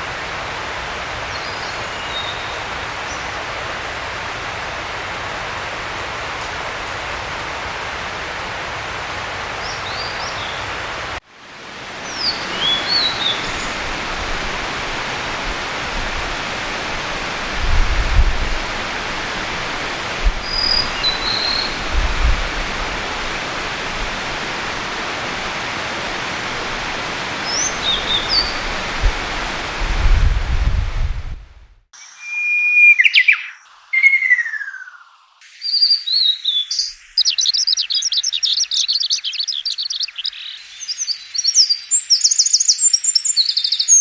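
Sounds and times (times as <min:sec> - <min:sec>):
steady rushing noise: 0:11.5 - 0:31.8
bird song phrases: 0:12.0 - 0:14.8, 0:20.1 - 0:29.0, 0:32.0 - 0:44.0.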